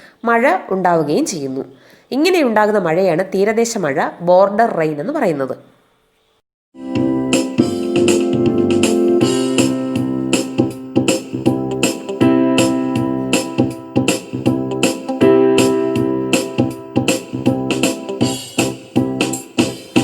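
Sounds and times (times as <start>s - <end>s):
electric piano with steady beat: 6.8s - 20.0s.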